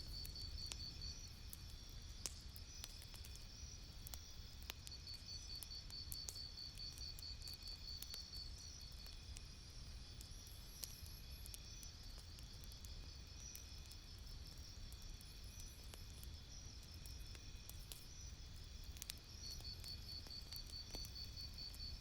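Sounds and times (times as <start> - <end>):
campfire crackling: 0.1 - 22.0.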